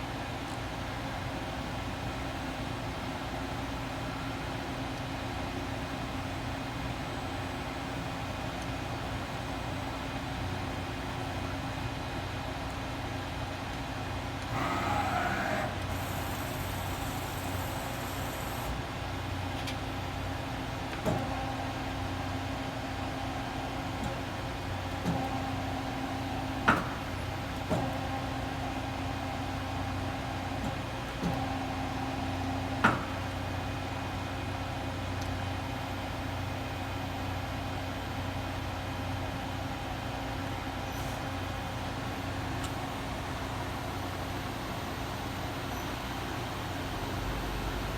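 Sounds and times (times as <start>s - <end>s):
lathe running with hum: 13.5s - 19.0s.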